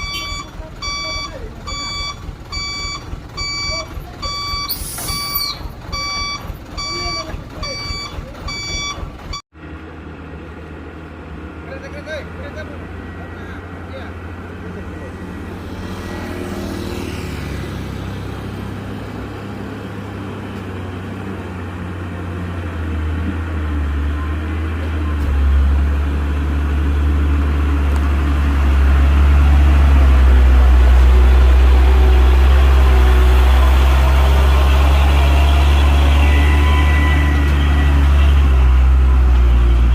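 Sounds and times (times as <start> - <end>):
truck diesel engine drone: 0.0 - 39.9.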